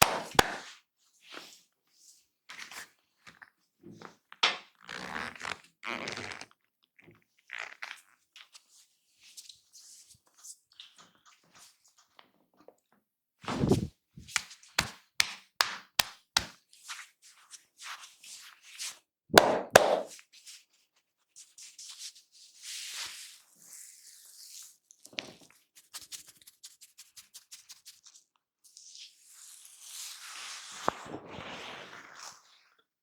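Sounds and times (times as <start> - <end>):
hands rubbing: 0.0 - 0.6, 13.5 - 14.4, 19.4 - 20.1
heavy hand slaps: 0.0 - 0.6, 19.4 - 20.1
sharp claps or taps: 0.0 - 0.6, 14.4 - 16.5, 19.4 - 20.1.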